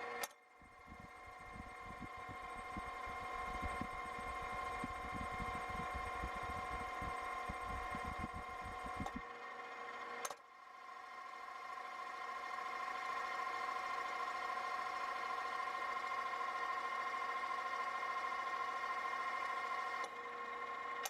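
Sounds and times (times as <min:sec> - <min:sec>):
electric motor and fans humming: 0:00.5 - 0:09.2.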